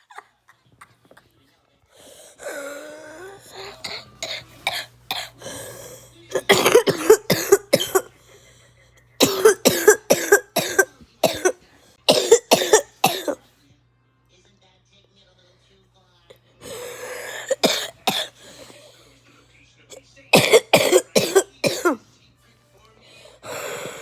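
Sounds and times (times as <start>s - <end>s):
person coughing: 2.4s - 8.2s, 9.2s - 13.4s, 16.6s - 18.8s, 20.3s - 22.0s.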